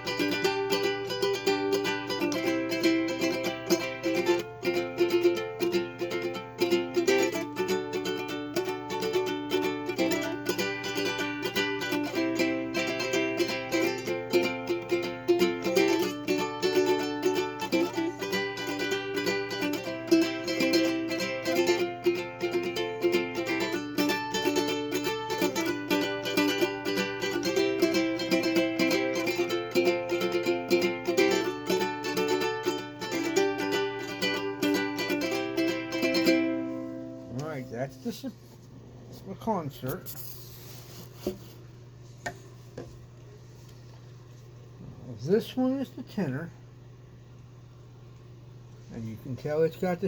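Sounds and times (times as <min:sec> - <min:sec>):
ukulele strumming: 0:00.0 - 0:38.4.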